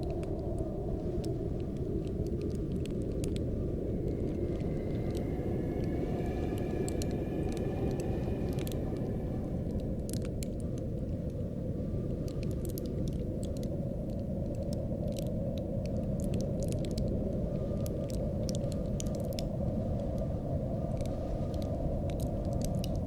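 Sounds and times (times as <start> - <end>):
cold wind low rumble: 0.0 - 23.0
crackling ticks of frost: 0.0 - 23.0
faint high whistle: 3.7 - 10.7.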